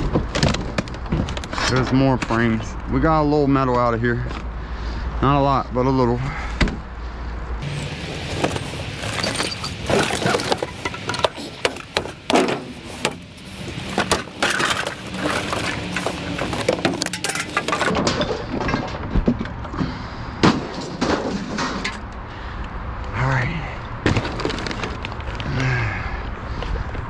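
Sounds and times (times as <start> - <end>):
scrap metal and debris clattering: 7.6 - 22.1.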